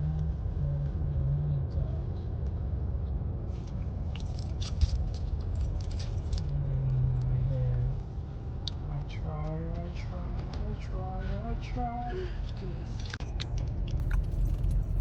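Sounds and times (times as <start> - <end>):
rumble of passing vehicles: 14.0 - 15.0.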